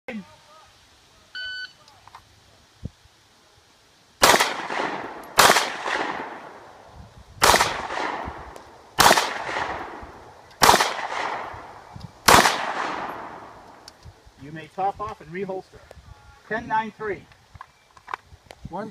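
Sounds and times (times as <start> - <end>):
pistol shots echoing: 4.2 - 6.7, 7.4 - 13.7.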